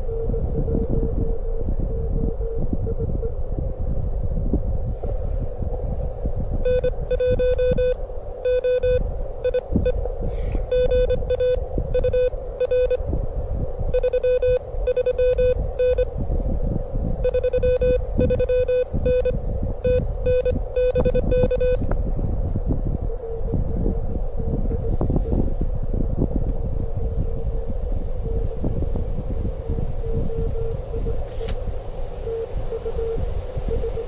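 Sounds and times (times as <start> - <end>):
wind buffeting microphone: 0.0 - 34.0
morse code beeps: 6.6 - 10.0, 10.7 - 13.0, 13.9 - 16.1, 17.2 - 21.8.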